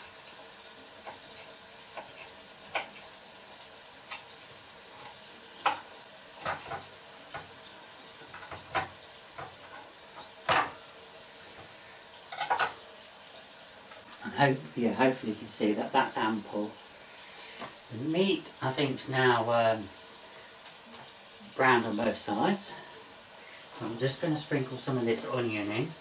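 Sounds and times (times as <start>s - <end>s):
meat sizzling in a pot: 0.0s - 26.0s.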